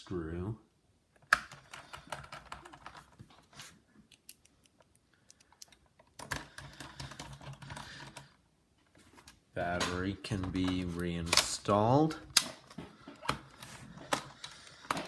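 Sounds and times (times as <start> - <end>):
screwdriver clicking and scraping: 4.1 - 7.8, 9.8 - 15.0
clicking and rattling: 4.1 - 15.0.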